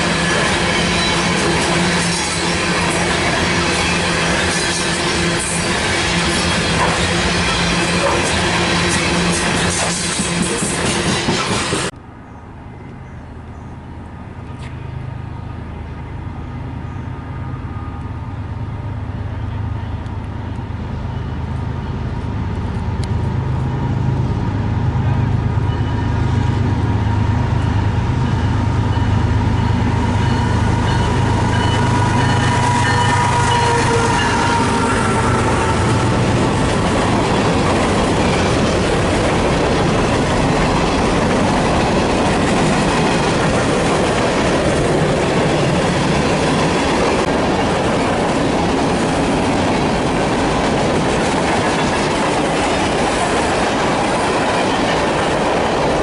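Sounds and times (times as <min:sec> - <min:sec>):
train cars rumbling and clacking: 0:00.0 - 0:12.0, 0:12.7 - 0:56.0.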